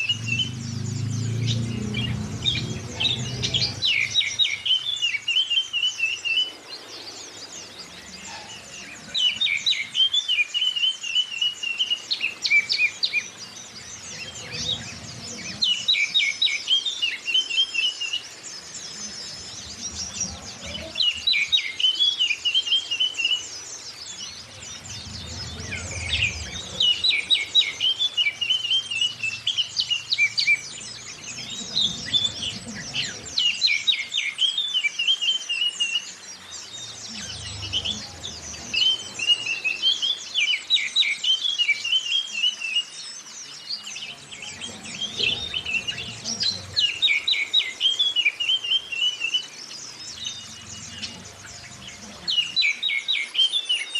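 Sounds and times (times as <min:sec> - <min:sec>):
birds chattering song: 0:00.0 - 0:53.9
soft low rumble: 0:24.1 - 0:27.9.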